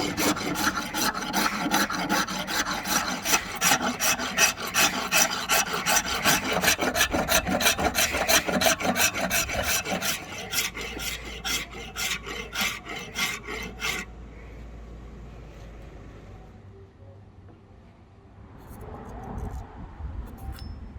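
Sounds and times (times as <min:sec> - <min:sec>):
hand file rasping: 0:00.0 - 0:14.1.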